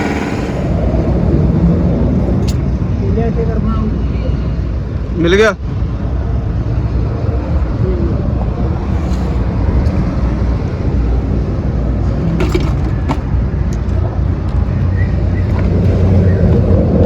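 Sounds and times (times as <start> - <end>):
machine humming: 0.0 - 1.2.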